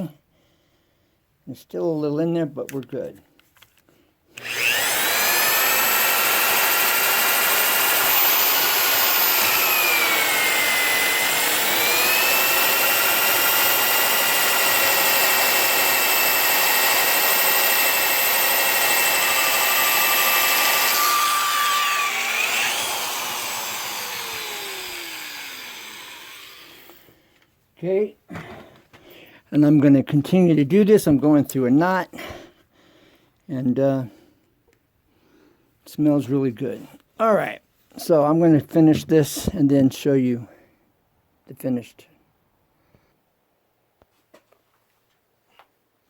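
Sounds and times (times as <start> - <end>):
electric drill boring into wood: 4.3 - 27.1.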